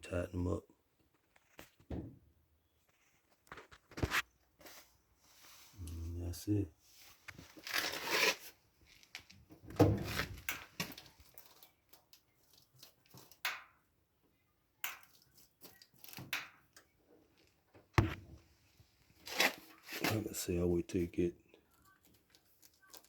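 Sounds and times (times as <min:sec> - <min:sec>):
rustling and scraping: 0:02.8 - 0:06.2, 0:06.8 - 0:11.8, 0:17.3 - 0:20.4.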